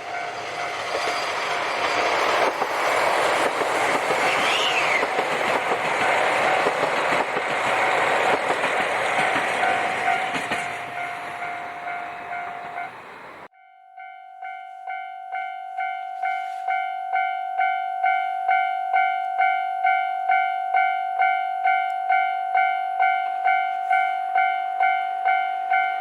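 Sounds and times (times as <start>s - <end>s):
train wheels clattering over rails: 0.0s - 13.5s
crossing warning bell ringing: 0.0s - 26.0s.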